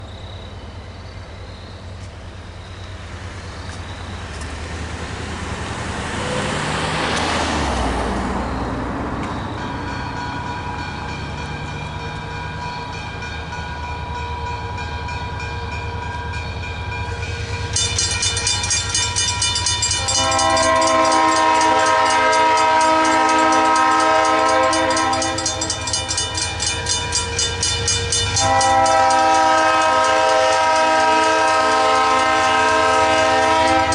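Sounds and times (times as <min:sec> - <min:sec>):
passing road vehicle: 0:00.0 - 0:14.2
crossing warning bells ringing: 0:00.0 - 0:33.9
train horn blasts: 0:18.8 - 0:27.2, 0:28.0 - 0:33.9.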